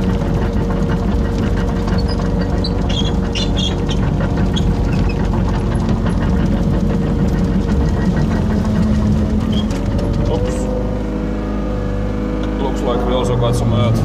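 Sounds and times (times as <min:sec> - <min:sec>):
excavator engine running: 0:00.0 - 0:14.0
high squeaks and clicks: 0:00.8 - 0:10.6.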